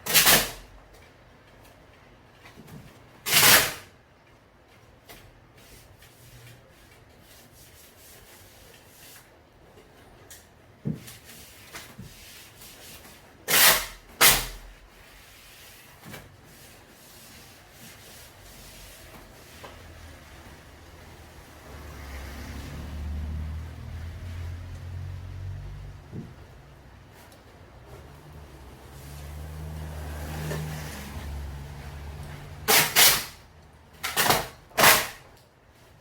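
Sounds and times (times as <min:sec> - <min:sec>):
hand rubbing and scraping door: 0:14.7 - 0:21.0.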